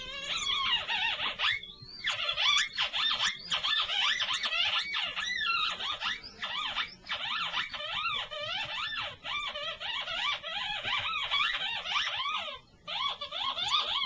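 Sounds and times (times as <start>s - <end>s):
dog howling and whining: 0.0s - 14.0s.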